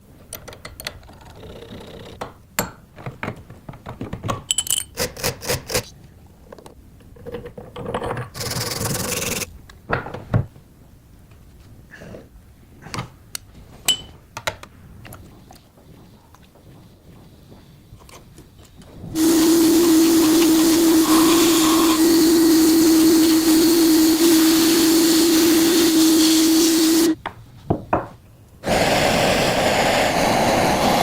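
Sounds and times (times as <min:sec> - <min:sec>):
steady hiss: 0:15.0 - 0:27.2, 0:28.6 - 0:31.0.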